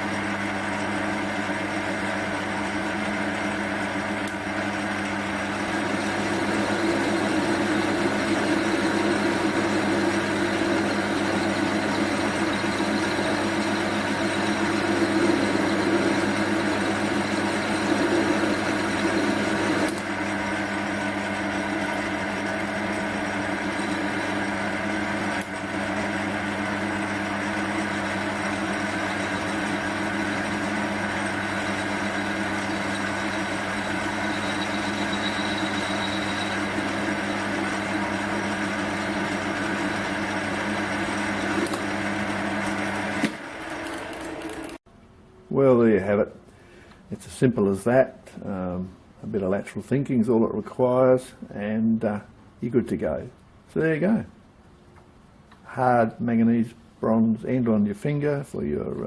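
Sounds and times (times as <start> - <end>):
lathe electric motor humming: 0.0 - 44.8.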